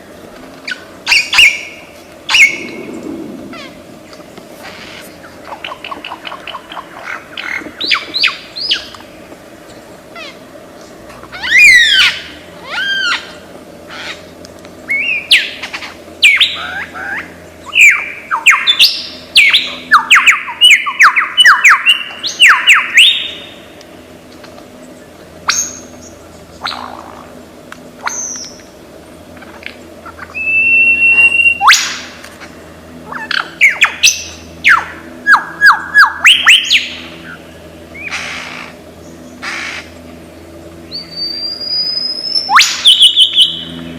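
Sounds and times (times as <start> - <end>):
lyrebird singing: 0.1 - 23.6, 24.2 - 27.4, 28.0 - 28.7, 29.4 - 32.2, 33.0 - 43.9.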